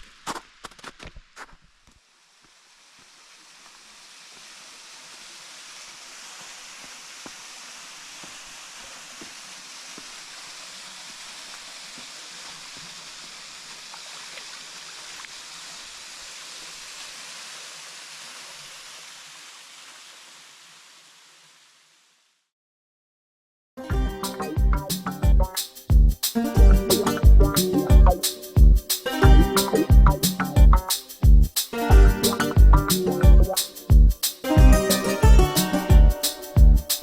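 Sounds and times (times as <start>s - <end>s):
rushing water: 2.0s - 22.2s.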